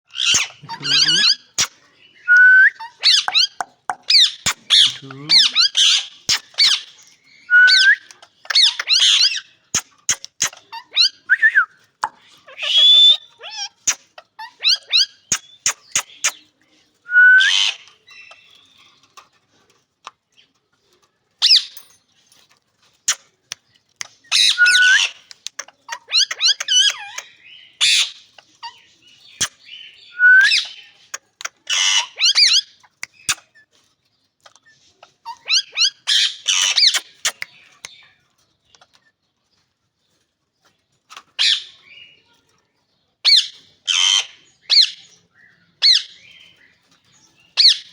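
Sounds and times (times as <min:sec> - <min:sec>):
parakeet calling: 0:00.1 - 0:01.7, 0:02.7 - 0:06.9
sharp clicks: 0:36.6 - 0:38.0.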